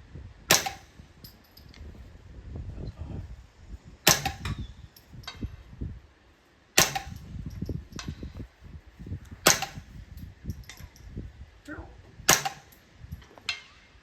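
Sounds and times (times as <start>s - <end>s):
suppressed rifle shots: 0.5s - 0.9s, 4.1s - 4.6s, 6.8s - 7.3s, 9.4s - 9.9s, 12.3s - 12.8s.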